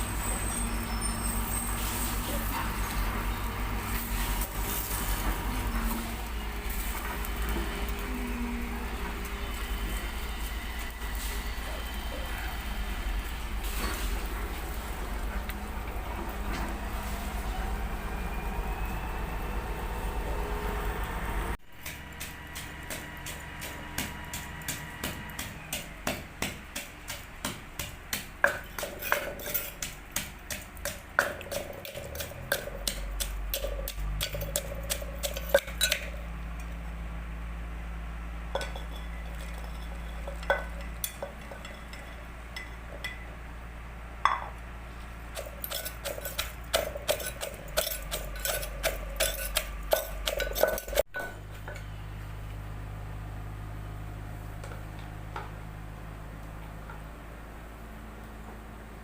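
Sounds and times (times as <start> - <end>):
pestle pounding in mortar: 21.8 - 36.2, 45.3 - 51.4.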